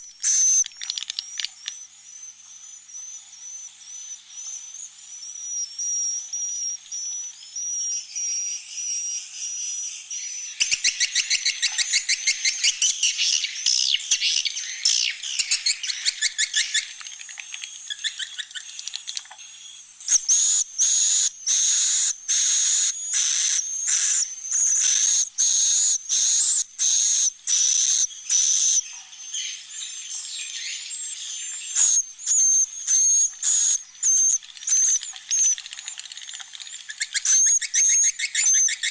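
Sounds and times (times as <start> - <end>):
swiftlet chirping twitters: 31.7 - 38.9.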